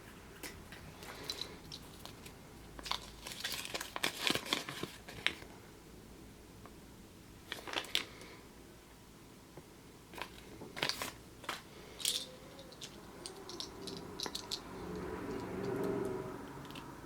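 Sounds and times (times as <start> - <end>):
foil and plastic crinkling: 2.0 - 5.5, 7.5 - 8.2, 10.1 - 12.2.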